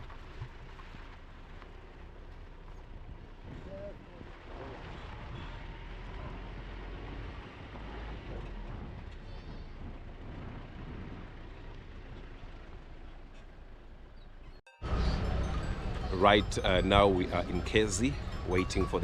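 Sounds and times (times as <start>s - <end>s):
vehicle engine and road rumble: 0.0s - 19.0s.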